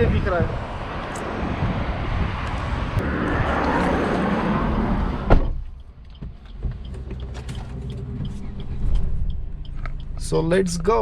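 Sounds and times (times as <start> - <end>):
road noise: 0.0 - 11.0
wind: 0.0 - 11.0
car door slamming: 5.1 - 5.8.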